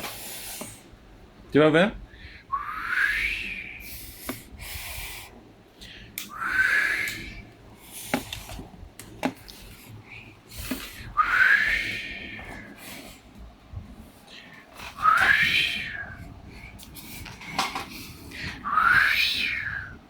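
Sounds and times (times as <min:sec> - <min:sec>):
airy puffs of breath: 0:00.0 - 0:00.9, 0:02.1 - 0:08.6, 0:09.6 - 0:13.4
person blowing breathy whistles: 0:02.5 - 0:05.3, 0:06.3 - 0:07.4, 0:10.9 - 0:13.0, 0:14.9 - 0:16.3.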